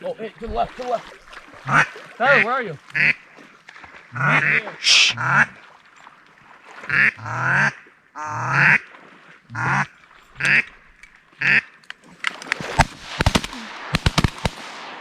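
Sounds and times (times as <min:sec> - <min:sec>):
duck quacks: 0:01.6 - 0:03.2, 0:04.1 - 0:05.6, 0:06.9 - 0:08.8, 0:09.5 - 0:10.7, 0:11.4 - 0:11.7
shotgun shots: 0:12.6 - 0:15.0.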